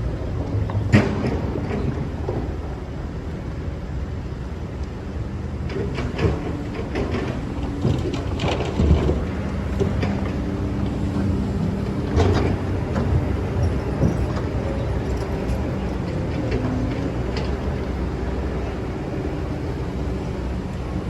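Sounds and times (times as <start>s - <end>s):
excavator diesel engine running: 5.6s - 21.0s
knocks and clanks: 5.7s - 20.4s.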